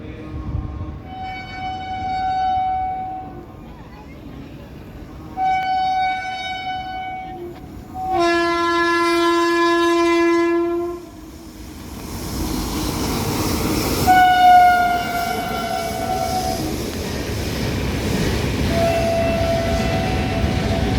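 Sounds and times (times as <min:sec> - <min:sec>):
train rumble and rail clatter: 0:00.0 - 0:20.9
locomotive horn blasts: 0:05.4 - 0:11.1, 0:14.1 - 0:16.5, 0:18.7 - 0:20.9.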